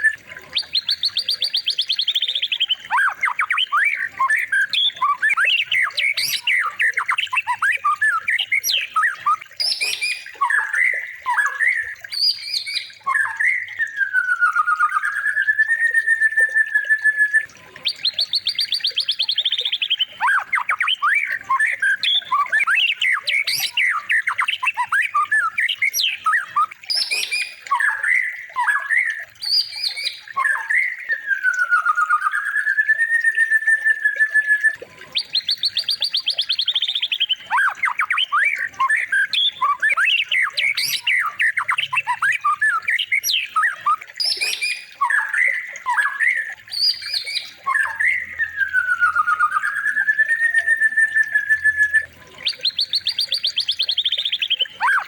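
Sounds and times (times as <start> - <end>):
recorded songbird whistles and trills: 0.0 - 55.0.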